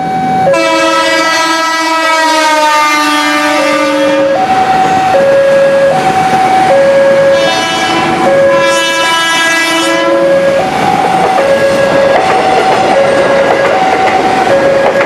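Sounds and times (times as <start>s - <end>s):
train running: 0.0s - 15.0s
train horn chord: 0.4s - 4.5s, 7.1s - 10.7s
two-note alternating tone: 4.1s - 9.4s.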